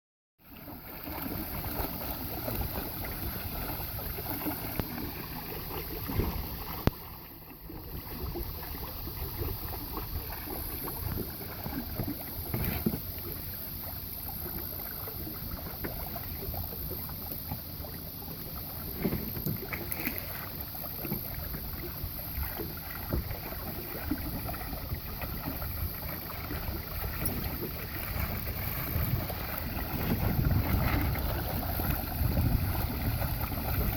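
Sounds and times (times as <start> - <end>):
water splashing along hull: 0.4 - 33.9
wind on microphone: 5.8 - 7.0, 21.5 - 33.9.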